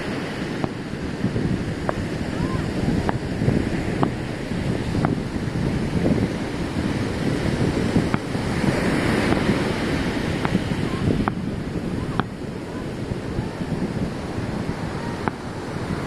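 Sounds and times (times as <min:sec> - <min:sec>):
ocean surf washing on beach: 0:00.0 - 0:16.0
wind buffeting microphone: 0:00.0 - 0:16.0
sharp pops or clicks: 0:05.0 - 0:05.2.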